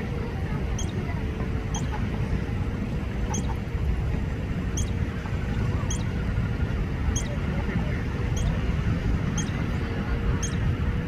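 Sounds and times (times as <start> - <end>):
low outdoor rumble: 0.0 - 11.0
songbird chirping: 0.8 - 1.0, 1.7 - 2.0, 3.3 - 3.6, 4.8 - 5.0, 5.8 - 6.1, 9.4 - 9.6.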